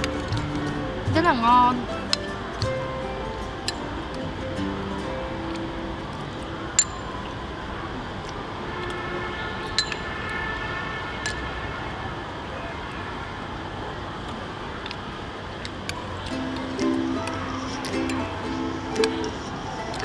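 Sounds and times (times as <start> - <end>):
background hiss: 0.0 - 6.8, 15.2 - 20.0
sharp clinks: 6.8 - 7.3.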